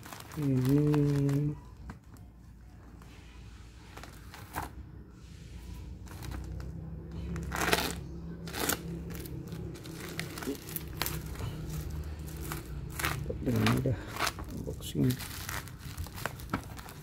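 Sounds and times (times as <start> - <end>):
packaging crinkling and rustling: 0.0 - 2.3, 6.0 - 17.0.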